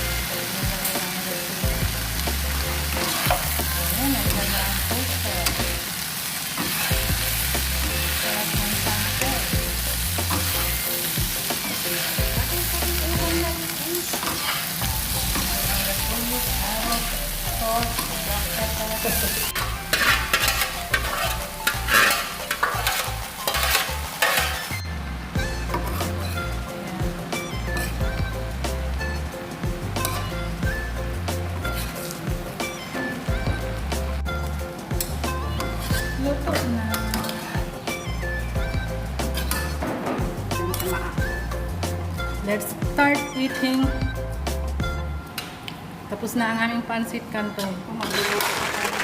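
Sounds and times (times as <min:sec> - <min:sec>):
stir-fry sizzling in a pan: 0:00.0 - 0:24.8, 0:25.4 - 0:45.2
stirring scraping against pan: 0:06.4 - 0:12.4, 0:13.0 - 0:17.1, 0:17.9 - 0:24.8, 0:25.7 - 0:26.6, 0:31.5 - 0:32.8, 0:34.9 - 0:37.9, 0:39.2 - 0:41.2.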